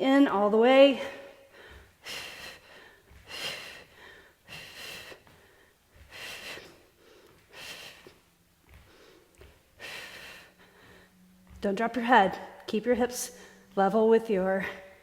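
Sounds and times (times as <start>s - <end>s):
person breathing hard: 1.1s - 11.4s.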